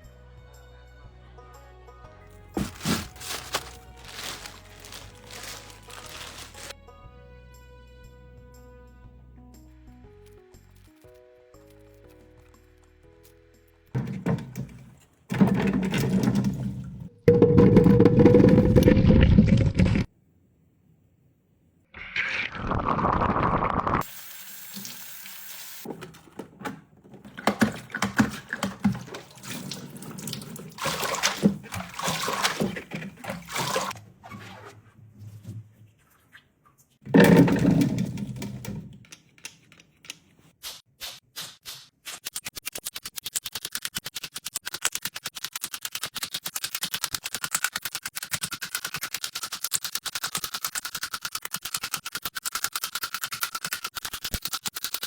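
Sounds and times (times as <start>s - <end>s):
water running and splashing: 2.6s - 6.7s, 27.3s - 34.0s.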